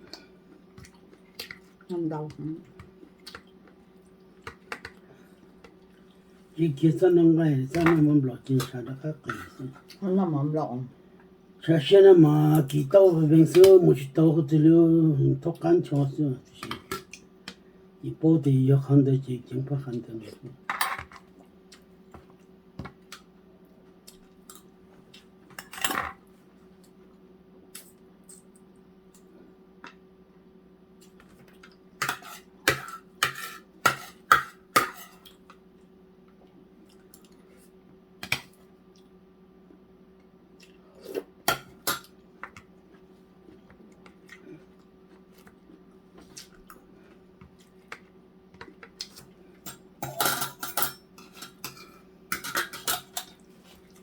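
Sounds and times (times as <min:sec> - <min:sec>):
utensils clinking on plates: 0:49.7 - 0:53.4.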